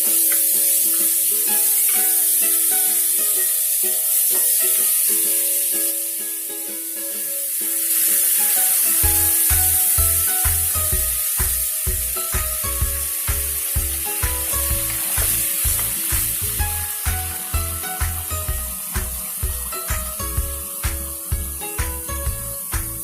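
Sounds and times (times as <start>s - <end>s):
food sizzling in a pan: 0.0s - 23.0s
background music with bass beat: 9.0s - 23.0s.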